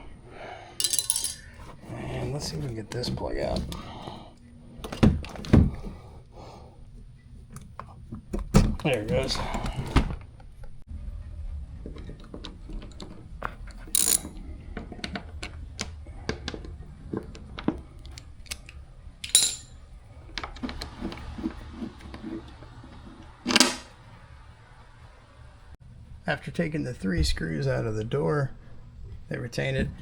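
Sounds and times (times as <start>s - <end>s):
small metallic clicks and rattles: 13.7s - 15.6s.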